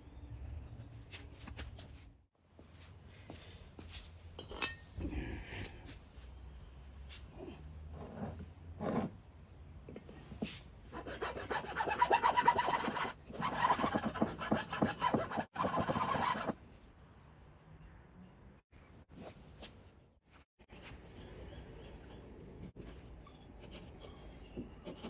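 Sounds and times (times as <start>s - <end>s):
saw cutting wood: 11.0s - 16.6s.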